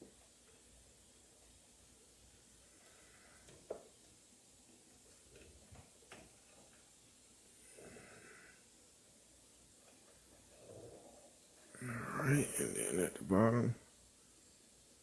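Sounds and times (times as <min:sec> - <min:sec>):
faint clicks and taps: 0:03.4 - 0:07.0.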